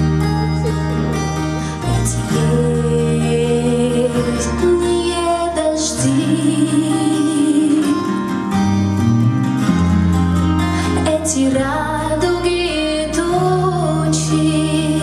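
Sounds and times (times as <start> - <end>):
instrumental backing: 0.0 - 15.0
woman singing slow pop song: 1.6 - 8.4, 10.8 - 15.0.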